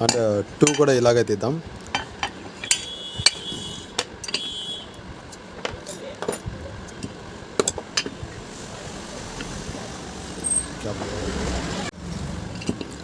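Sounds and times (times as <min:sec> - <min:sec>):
metal clinks and taps: 0:04.0 - 0:04.5.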